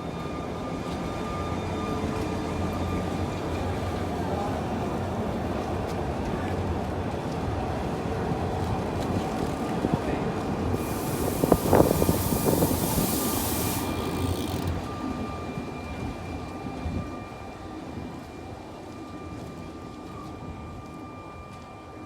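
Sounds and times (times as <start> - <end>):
train rumbling on rails: 0.0 - 16.8
thin steady whine: 10.7 - 18.7
hiss: 10.8 - 14.7
train wheels clunking: 10.8 - 14.9.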